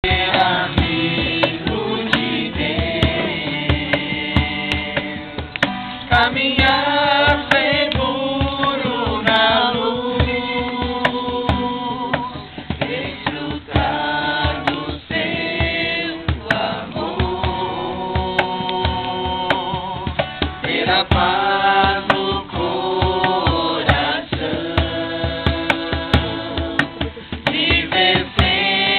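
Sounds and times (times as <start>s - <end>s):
steady drum beat: 0.0s - 28.9s
voices singing: 0.0s - 28.9s.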